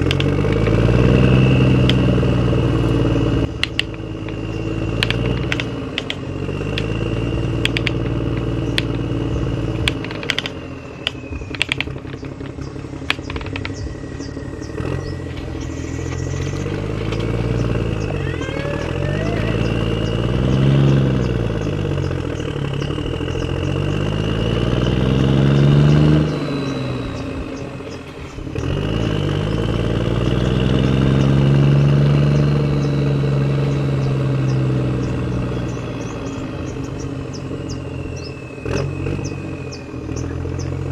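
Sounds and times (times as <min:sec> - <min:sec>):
sharp clicks and knocks: 0:00.0 - 0:00.9, 0:03.5 - 0:04.4, 0:05.0 - 0:07.0, 0:07.6 - 0:09.1, 0:09.8 - 0:13.9, 0:15.2 - 0:21.0
vehicle motor revving: 0:00.0 - 0:40.9.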